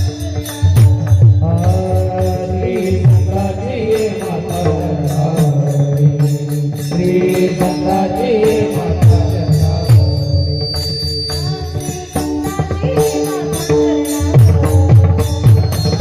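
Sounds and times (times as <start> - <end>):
women singing devotional song: 0.0 - 5.0, 11.2 - 16.0
instrumental accompaniment with beat: 0.0 - 16.0.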